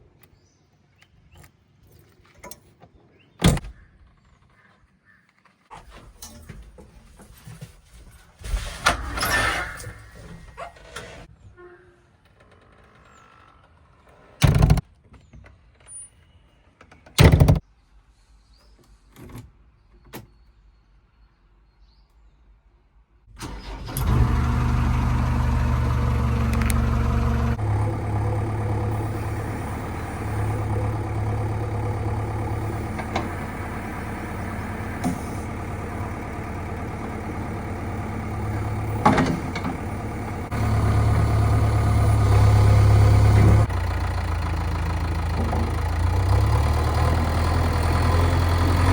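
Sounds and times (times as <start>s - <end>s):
diesel engine starting and running: 5.6s - 7.4s, 8.4s - 11.3s, 23.3s - 48.9s.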